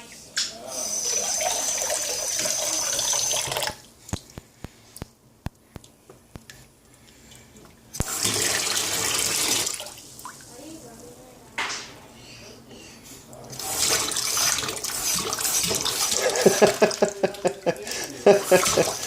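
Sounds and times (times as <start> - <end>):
kitchen tap running: 0.4 - 4.4, 5.8 - 10.9, 13.4 - 19.0
water drips: 3.4 - 8.2, 9.6 - 10.6, 14.2 - 19.0.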